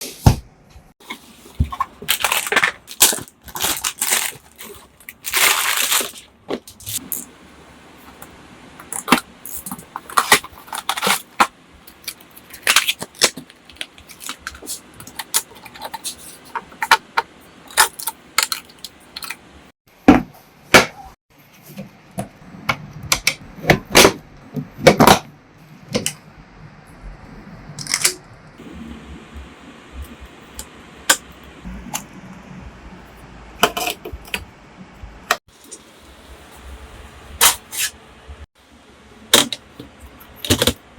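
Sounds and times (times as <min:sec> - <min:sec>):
packaging being handled: 0:01.0 - 0:07.1.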